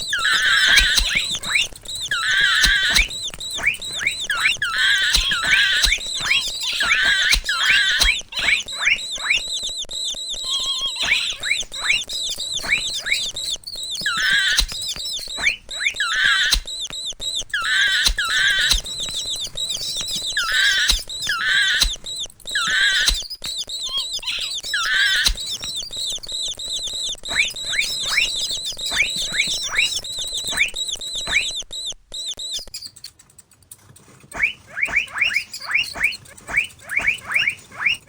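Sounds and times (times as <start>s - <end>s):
loud squeals: 0.0s - 32.8s, 34.3s - 38.0s
mouse squeaking: 0.0s - 38.0s.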